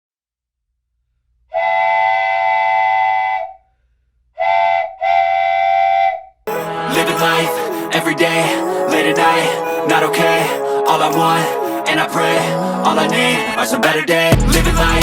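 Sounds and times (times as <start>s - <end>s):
train whistle blasts: 1.5s - 3.6s, 4.4s - 11.9s.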